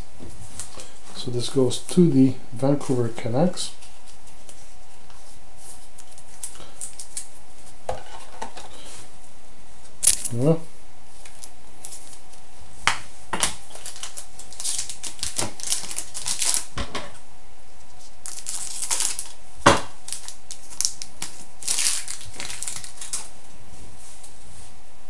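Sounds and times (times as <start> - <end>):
wrapper crinkling: 5.8 - 7.4, 10.0 - 10.4, 13.4 - 16.8, 18.2 - 23.3
cards being handled: 11.2 - 12.4, 13.3 - 16.7, 18.2 - 19.4, 20.0 - 23.3.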